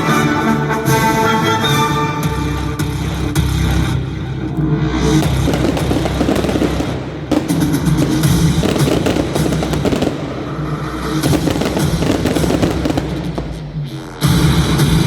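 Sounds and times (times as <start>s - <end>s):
fireworks banging and crackling: 2.6s - 15.0s
loud music with drum beat: 5.1s - 10.5s, 11.2s - 15.0s.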